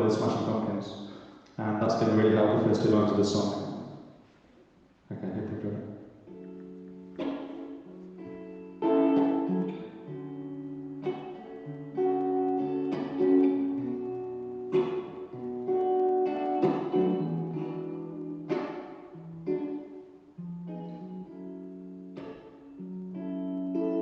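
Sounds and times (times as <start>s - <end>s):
acoustic guitar strumming chords: 6.0s - 24.0s.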